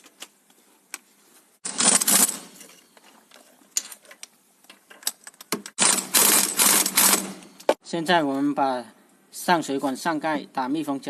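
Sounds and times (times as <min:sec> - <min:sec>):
power wrench burst: 0:01.6 - 0:02.6, 0:05.8 - 0:07.6.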